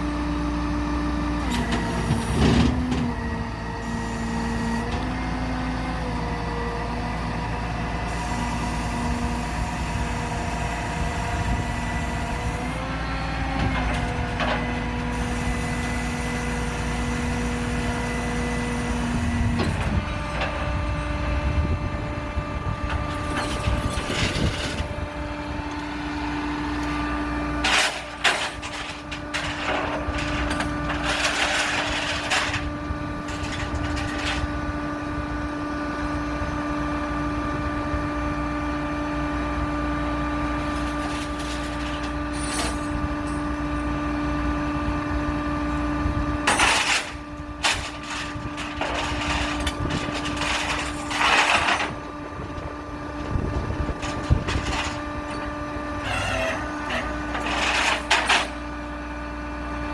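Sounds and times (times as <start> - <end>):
steady mechanical hum: 0.0 - 59.9
short clattering noises: 22.9 - 25.8, 27.6 - 34.5, 40.6 - 43.5, 46.4 - 52.1, 54.0 - 58.6.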